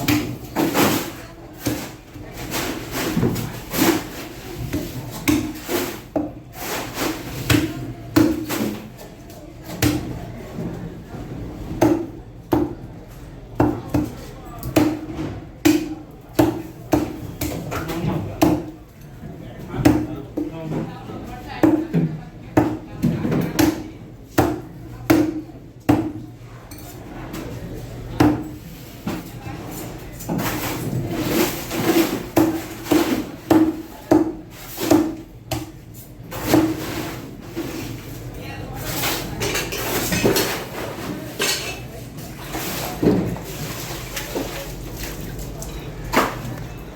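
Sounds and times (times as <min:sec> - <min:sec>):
knife chopping fish on block: 0:04.7 - 0:06.3
knife chopping fish on wood: 0:04.7 - 0:06.3, 0:15.6 - 0:17.6.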